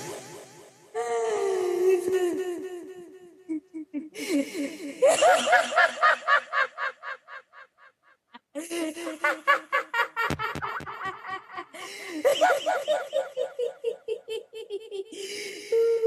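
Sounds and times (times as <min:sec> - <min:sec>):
processed pitched laughter: 0:05.0 - 0:15.2.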